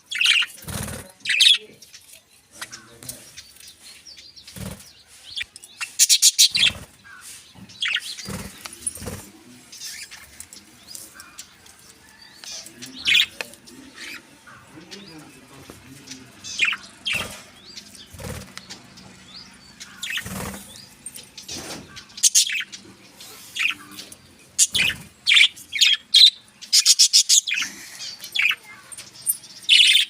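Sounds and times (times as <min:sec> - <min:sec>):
birds chirping: 0:00.0 - 0:30.0
wings fluttering: 0:00.5 - 0:01.1, 0:04.4 - 0:05.0, 0:08.0 - 0:09.4, 0:17.1 - 0:18.8, 0:19.9 - 0:20.8.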